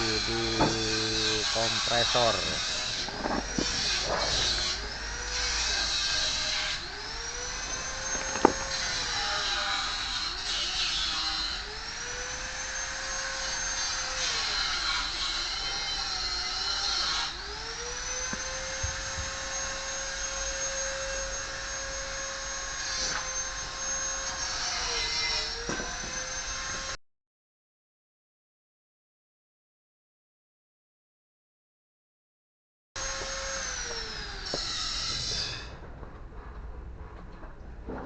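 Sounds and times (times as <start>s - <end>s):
high-speed electric motor whining: 0.0s - 27.0s.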